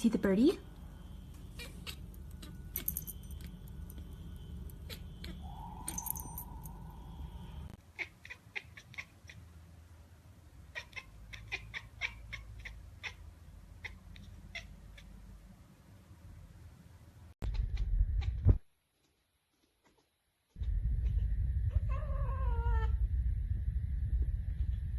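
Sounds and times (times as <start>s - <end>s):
kitten crying: 1.5s - 2.9s, 4.8s - 6.9s.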